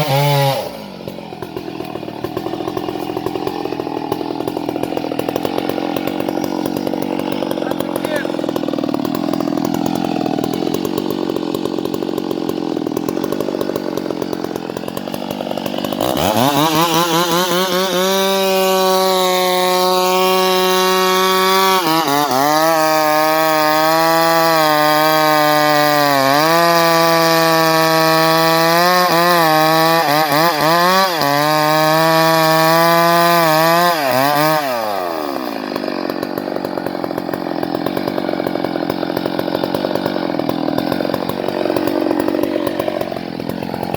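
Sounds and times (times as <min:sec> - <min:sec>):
chainsaw cutting wood: 0:00.0 - 0:43.9.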